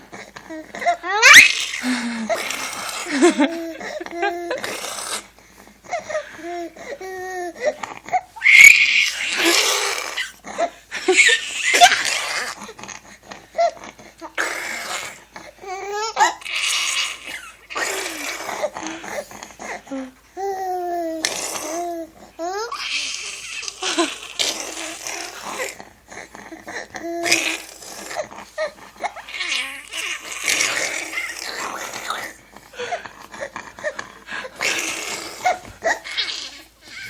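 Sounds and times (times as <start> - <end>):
baby babbling and squealing: 1.1 - 2.0.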